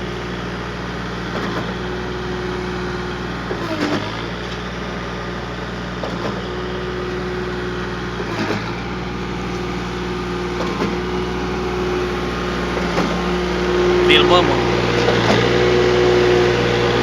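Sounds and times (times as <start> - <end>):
concrete pump running: 0.0 - 17.0.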